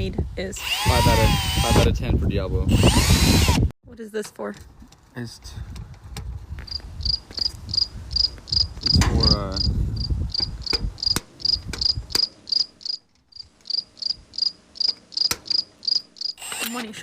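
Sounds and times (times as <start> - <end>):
power drill whining: 0.6 - 1.9, 2.7 - 3.7, 16.4 - 17.0
insect chirping: 6.7 - 16.6.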